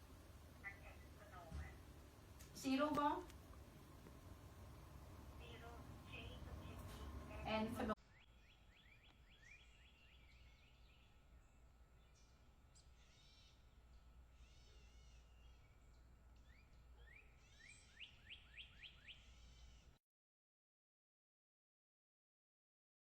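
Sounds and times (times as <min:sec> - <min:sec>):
sparrow chirps: 0:02.6 - 0:19.9.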